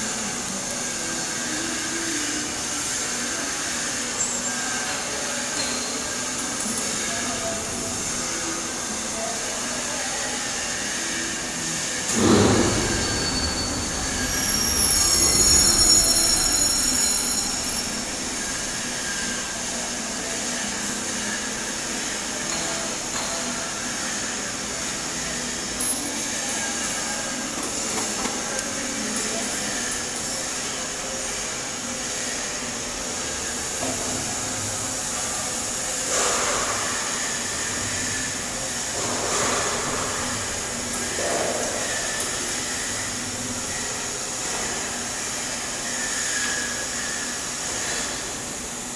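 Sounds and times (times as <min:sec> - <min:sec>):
welding arc frying hiss: 0:00.0 - 0:48.9
high squeal: 0:12.0 - 0:20.7, 0:45.8 - 0:48.1.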